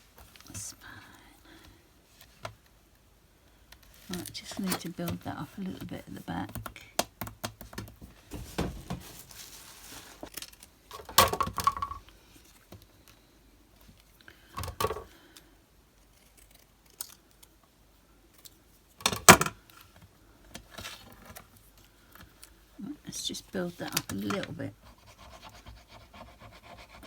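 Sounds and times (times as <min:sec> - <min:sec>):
rustling craft supplies: 0:03.8 - 0:06.8, 0:07.6 - 0:15.1, 0:23.2 - 0:25.0.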